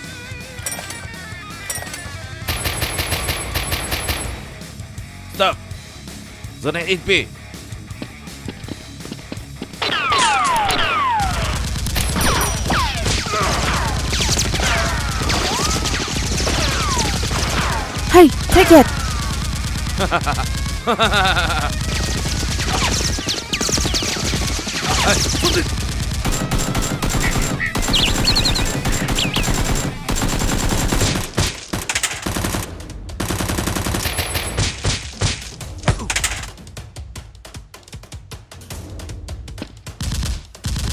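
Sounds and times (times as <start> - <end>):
automatic gunfire burst: 21.8 - 34.6.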